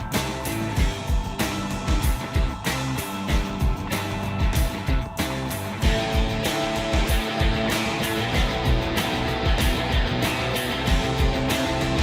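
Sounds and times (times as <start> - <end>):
rock music with guitar and drums: 0.0 - 12.0.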